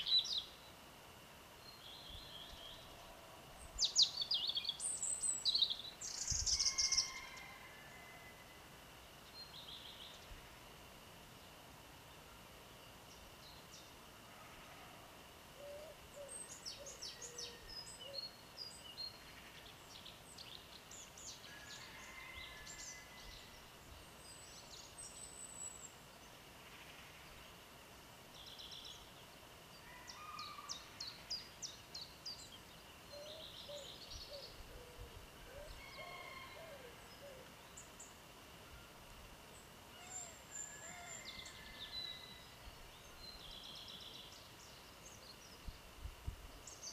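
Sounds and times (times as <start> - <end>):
small birds singing: 0.0 - 0.8, 1.5 - 7.5, 9.2 - 10.6, 15.6 - 46.9.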